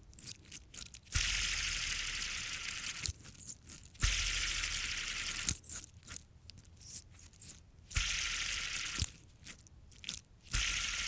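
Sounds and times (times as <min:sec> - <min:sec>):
squeaky fidget spinner whirr: 0:00.0 - 0:11.0
fidget spinner flick clicks: 0:01.1 - 0:03.2, 0:04.0 - 0:05.8, 0:08.0 - 0:09.2, 0:10.5 - 0:11.0.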